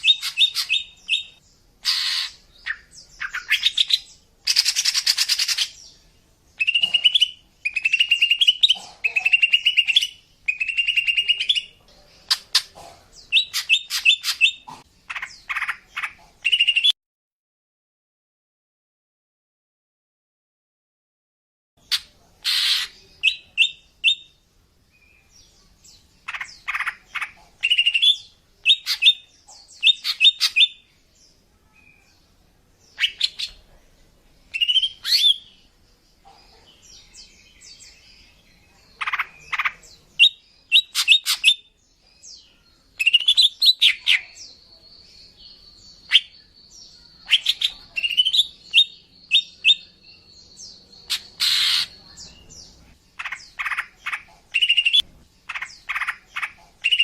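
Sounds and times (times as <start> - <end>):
bird chirping and whistling: 6.6 - 8.6, 54.5 - 55.0.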